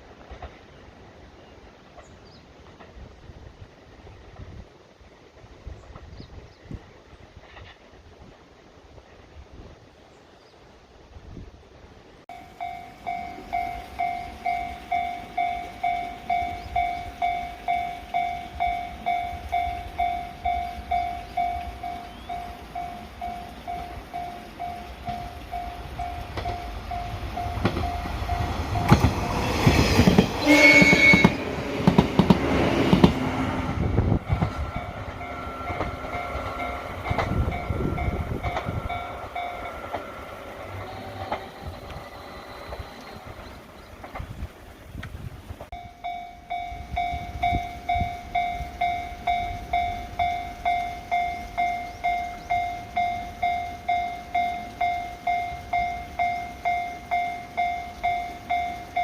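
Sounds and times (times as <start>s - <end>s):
train wheels rumbling on rails: 0.0s - 8.6s, 12.3s - 59.0s
level crossing warning bell: 12.3s - 31.4s, 34.2s - 43.4s, 45.7s - 59.0s
train horn blast: 30.0s - 32.0s, 33.3s - 43.4s.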